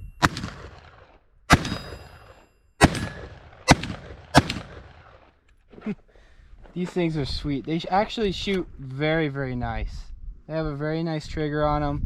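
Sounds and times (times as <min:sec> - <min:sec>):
gunshots with echo: 0:00.2 - 0:05.3
high metallic ring: 0:01.6 - 0:03.3.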